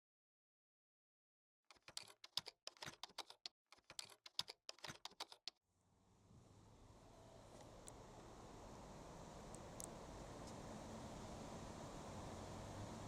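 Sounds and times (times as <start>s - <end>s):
rapid sharp clicks: 1.7s - 5.6s
faint steady hiss: 5.9s - 13.0s.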